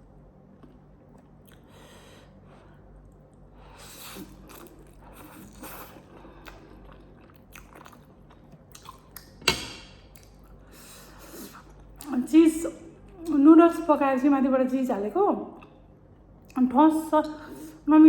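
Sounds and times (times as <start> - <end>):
person chewing food: 0.6 - 2.0, 3.0 - 9.4, 10.0 - 12.1.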